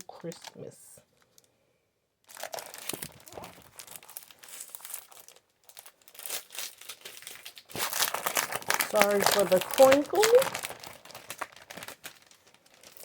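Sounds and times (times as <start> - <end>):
plastic packaging crinkling: 2.2 - 13.0.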